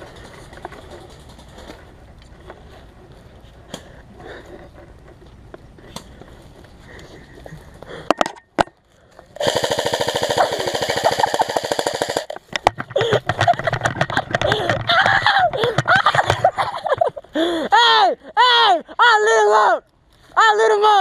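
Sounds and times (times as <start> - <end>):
faint outdoor hiss: 0.0 - 21.0
airsoft rifle firing full auto: 9.4 - 12.4
sharp clicks: 9.4 - 13.2.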